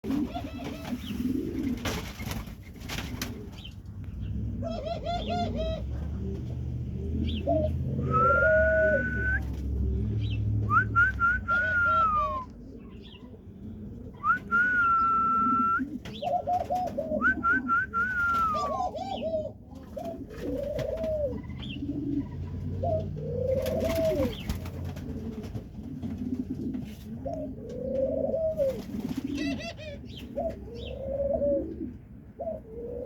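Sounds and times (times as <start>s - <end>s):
dove cooing: 0.0s - 33.0s
long whistled tones: 8.0s - 9.5s, 10.7s - 12.5s, 14.2s - 15.8s, 17.2s - 18.6s.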